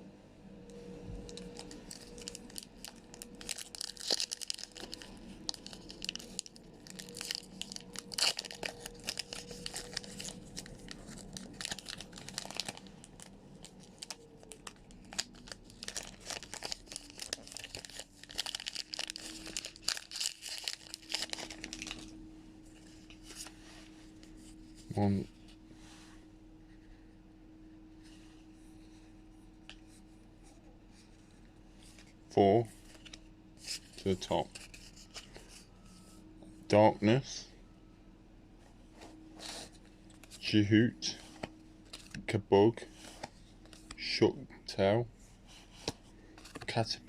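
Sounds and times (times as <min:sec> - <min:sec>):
foil wrapper crinkling and tearing: 0:01.2 - 0:22.2.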